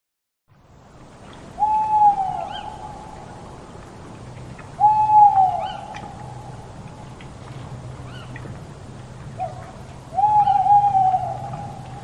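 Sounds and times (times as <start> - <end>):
owl hooting: 1.6 - 3.0, 4.8 - 6.4, 9.4 - 12.0.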